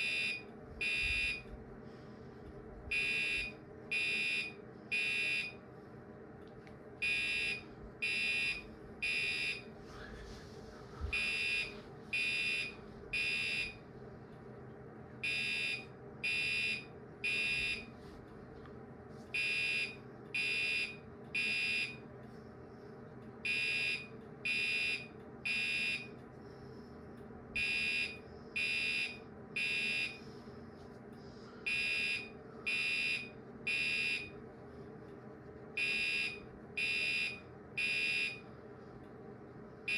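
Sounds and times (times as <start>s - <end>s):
electronic fire alarm horn: 0.0s - 1.5s, 2.9s - 5.6s, 7.0s - 9.7s, 11.1s - 13.8s, 15.2s - 18.0s, 19.3s - 22.0s, 23.5s - 26.2s, 27.6s - 30.2s, 31.6s - 34.4s, 35.8s - 38.4s
low steady hum: 0.0s - 39.9s.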